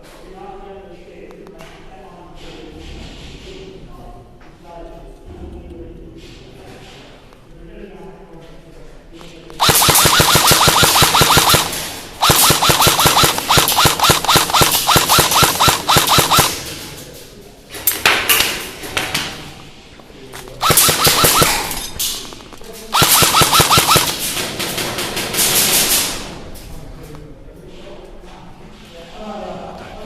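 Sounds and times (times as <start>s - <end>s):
airsoft gun firing full auto: 9.6s - 16.6s, 20.6s - 21.8s, 22.9s - 24.4s.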